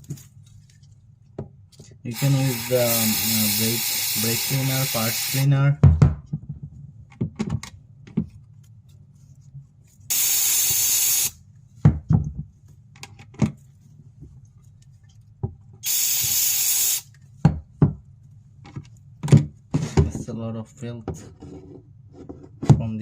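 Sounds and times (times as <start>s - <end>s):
aerosol spray hissing: 2.1s - 5.5s, 10.1s - 11.4s, 15.8s - 17.1s
knocks and clicks of handling: 5.8s - 8.6s, 17.4s - 20.3s.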